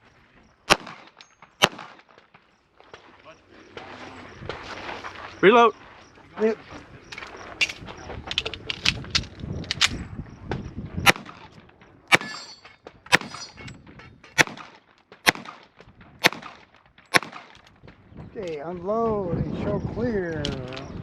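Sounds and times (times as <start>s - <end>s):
pistol shots: 0.7s - 2.3s, 11.0s - 13.6s, 14.3s - 17.7s
pistol reload clicks: 7.6s - 10.0s.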